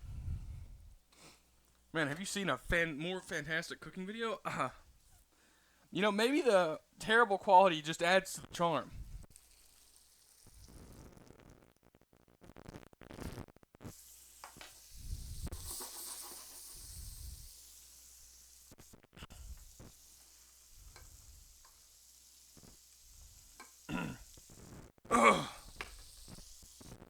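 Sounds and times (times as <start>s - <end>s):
chicken sizzling in a pan: 8.3s - 11.7s, 12.5s - 27.0s.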